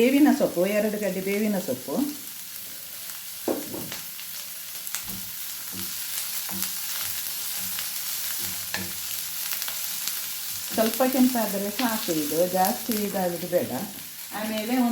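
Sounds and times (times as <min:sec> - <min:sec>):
onions sizzling in oil: 0:00.0 - 0:14.9
spoon stirring and knocking pan: 0:03.4 - 0:04.0, 0:05.0 - 0:09.1.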